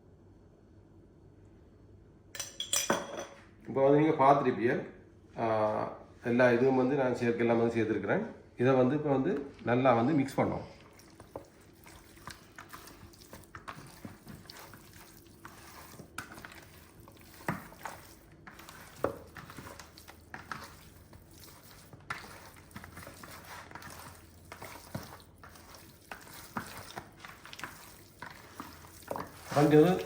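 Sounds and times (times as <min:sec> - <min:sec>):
wet squishing of mixing chicken: 0:10.2 - 0:30.0.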